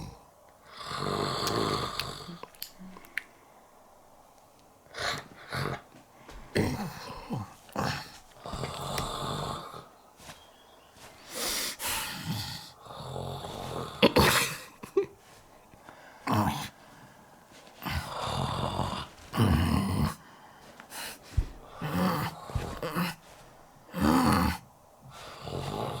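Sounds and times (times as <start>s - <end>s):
comic snoring and snorts: 0.8s - 2.4s, 12.1s - 14.7s, 17.8s - 20.2s, 23.9s - 24.6s, 25.2s - 26.0s.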